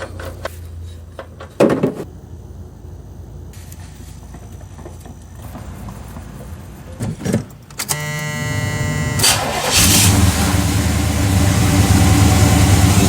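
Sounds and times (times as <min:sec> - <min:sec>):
engine running: 0:07.9 - 0:13.0
starter motor whirring: 0:07.9 - 0:13.0.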